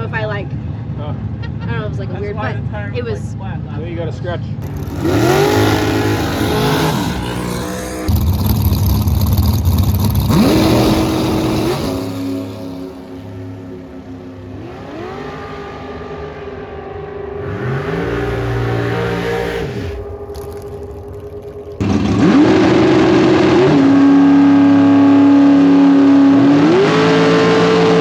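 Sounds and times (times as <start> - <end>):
racing car engines revving: 4.6 - 28.0.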